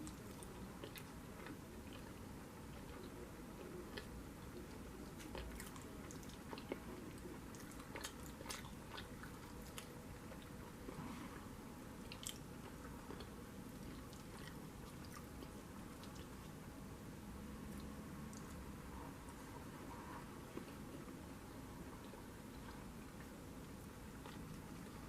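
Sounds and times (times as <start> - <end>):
person chewing food: 0.0 - 16.6, 22.0 - 25.0.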